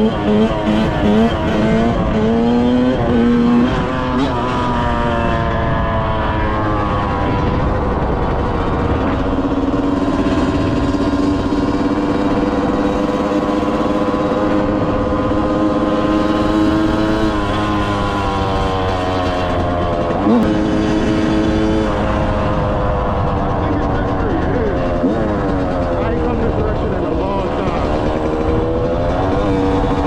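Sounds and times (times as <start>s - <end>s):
two-stroke motorcycle engine: 0.0s - 30.0s
low rumble: 17.9s - 30.0s.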